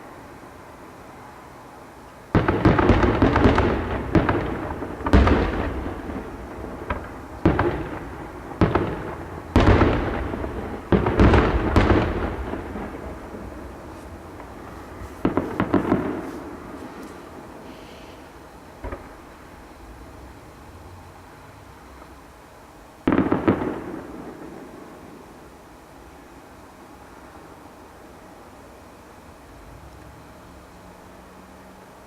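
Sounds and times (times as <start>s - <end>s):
fireworks booming: 2.3s - 22.2s, 23.0s - 25.7s.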